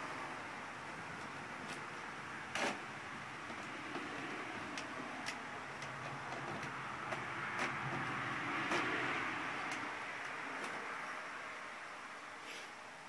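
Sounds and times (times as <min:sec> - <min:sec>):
steady background hiss: 0:06.7 - 0:13.0.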